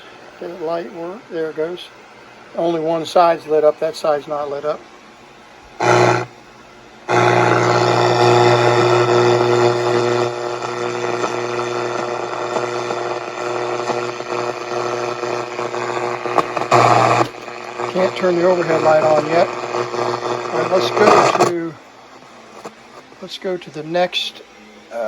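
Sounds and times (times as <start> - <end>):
low hum: 5.3 - 22.7
radio static: 5.7 - 6.4, 7.0 - 24.4.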